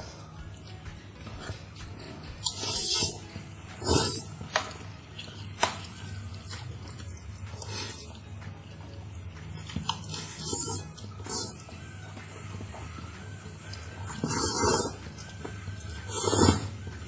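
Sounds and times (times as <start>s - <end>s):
person slurping noodles: 2.4s - 3.2s, 3.8s - 4.4s, 7.6s - 8.2s, 10.1s - 11.6s, 14.1s - 15.0s, 16.0s - 16.7s.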